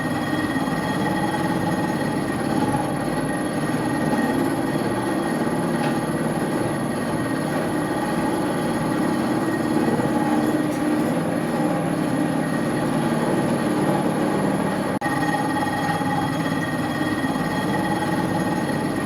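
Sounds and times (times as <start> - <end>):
milling machine drone: 0.0 - 19.0.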